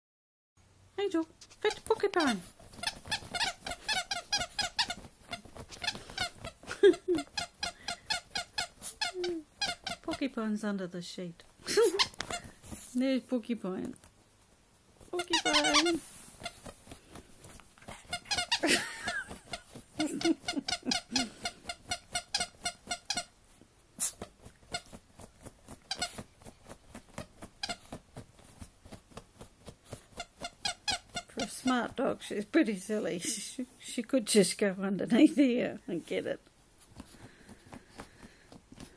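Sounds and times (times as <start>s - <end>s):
squeaky dog toy squeaking: 1.7s - 10.3s, 11.7s - 12.6s, 15.2s - 16.7s, 18.0s - 23.4s, 24.1s - 25.0s, 25.8s - 26.3s, 27.2s - 28.0s, 30.1s - 32.0s
scratching rustle of sheet: 11.6s - 13.1s, 14.1s - 20.4s.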